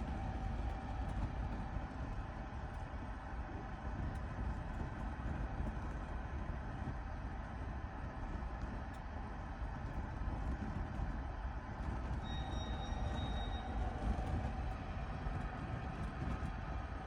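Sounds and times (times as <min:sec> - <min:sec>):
thin high whistle: 0:12.2 - 0:14.2.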